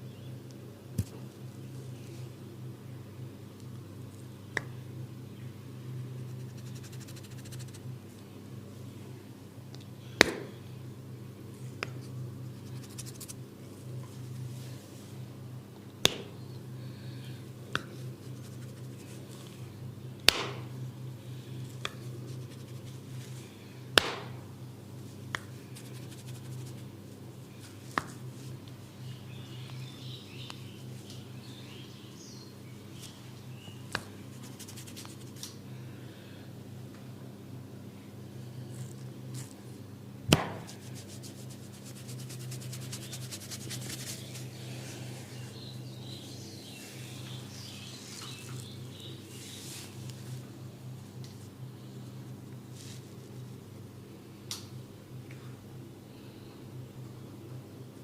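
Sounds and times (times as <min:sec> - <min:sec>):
steady low hum: 0:00.0 - 0:58.0
hands slapping during massage: 0:16.0 - 0:16.3, 0:20.3 - 0:20.6, 0:24.0 - 0:24.3, 0:33.9 - 0:35.4, 0:40.3 - 0:44.5.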